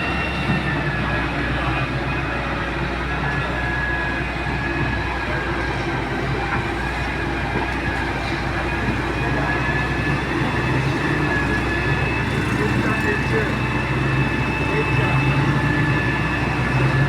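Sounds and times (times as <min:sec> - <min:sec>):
excavator diesel engine humming: 0:00.0 - 0:17.0
thin steady whine: 0:06.4 - 0:17.0.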